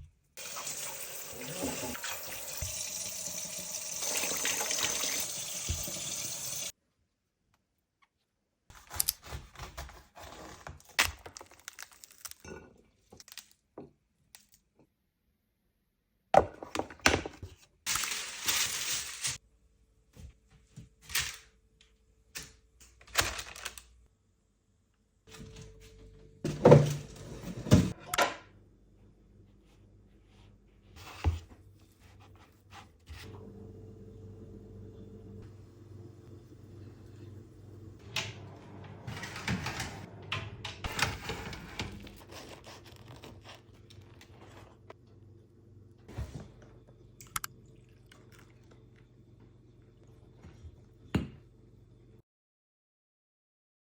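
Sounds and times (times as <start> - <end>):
tap water running into sink: 0.4 - 6.7
kitchen knocks and clatters: 16.4 - 17.6, 26.4 - 28.6.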